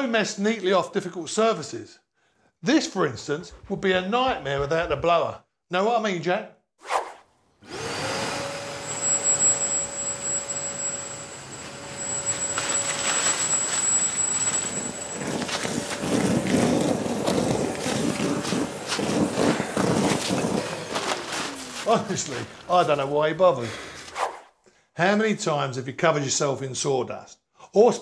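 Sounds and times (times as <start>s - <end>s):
vacuum blower motor whine: 7.6s - 23.1s.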